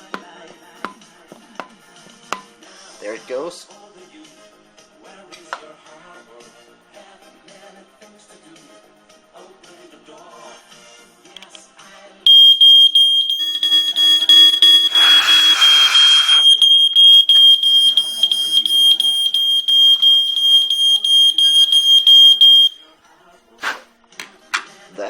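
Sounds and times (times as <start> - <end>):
smoke alarm shrill tone: 12.3 - 22.8
brief hiss: 23.6 - 23.8.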